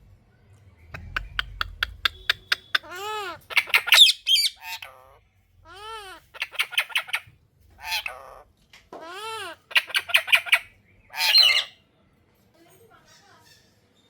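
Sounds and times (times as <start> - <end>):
parrot whistled calls: 1.0 - 5.0, 9.8 - 11.8
parrot squawky chatter: 1.0 - 11.8.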